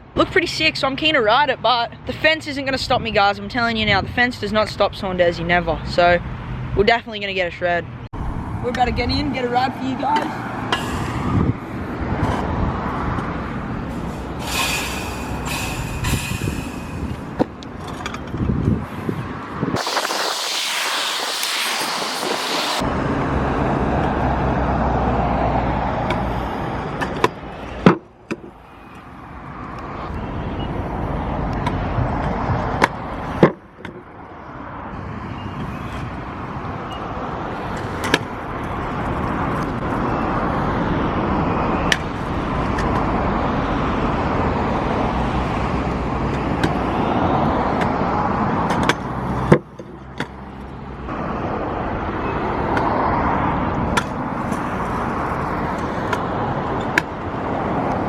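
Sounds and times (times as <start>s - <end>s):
scooter wheels rolling on concrete: 52.7s - 58.0s.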